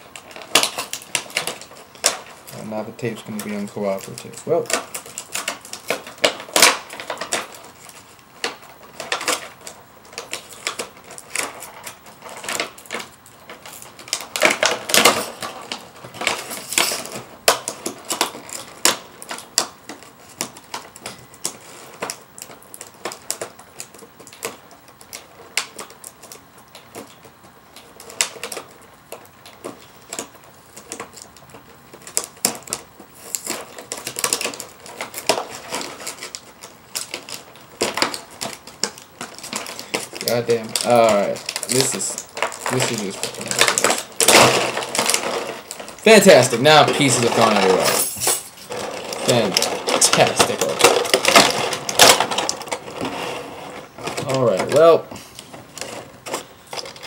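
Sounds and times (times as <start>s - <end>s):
plastic packaging rustling: 0.0s - 57.0s
tape cut and peeled from cardboard: 46.1s - 49.6s.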